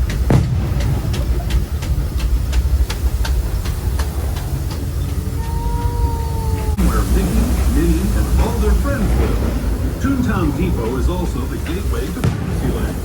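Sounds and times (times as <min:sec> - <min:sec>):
even clicking of train wheels: 0:00.0 - 0:13.0
falling whine: 0:00.0 - 0:13.0
train rumbling on track: 0:00.0 - 0:13.0.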